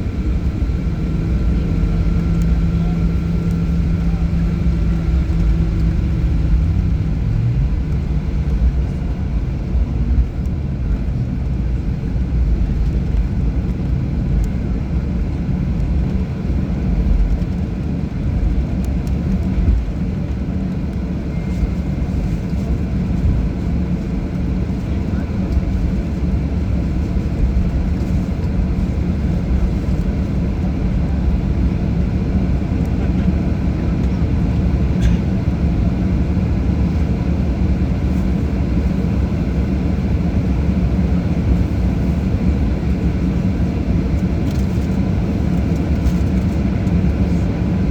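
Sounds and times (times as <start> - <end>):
airplane cabin engine rumble: 0.0 - 47.9.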